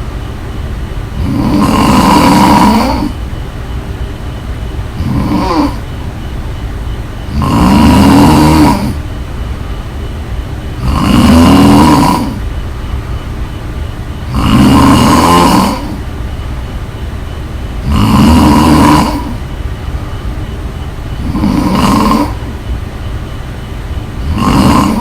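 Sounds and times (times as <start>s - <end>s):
person snoring loudly: 1.2s - 3.2s, 5.0s - 5.8s, 7.3s - 9.0s, 10.8s - 12.4s, 14.2s - 16.0s, 17.8s - 19.4s, 21.2s - 22.5s, 24.2s - 25.0s
quiet breathing: 8.0s - 15.0s, 19.0s - 25.0s.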